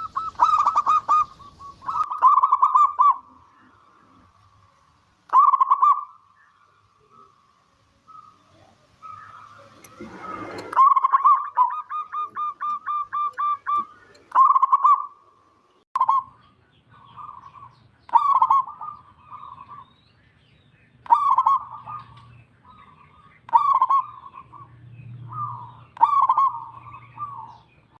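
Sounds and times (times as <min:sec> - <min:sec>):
dove cooing: 0:00.0 - 0:04.4, 0:05.3 - 0:06.2, 0:08.1 - 0:15.2, 0:17.0 - 0:19.9, 0:21.1 - 0:24.7, 0:25.3 - 0:27.6.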